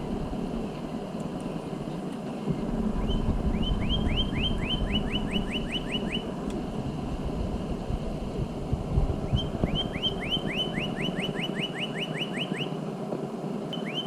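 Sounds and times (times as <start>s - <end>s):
low background rumble: 0.0s - 11.6s
bird whistling song: 3.0s - 6.3s, 9.3s - 12.8s, 13.7s - 14.0s.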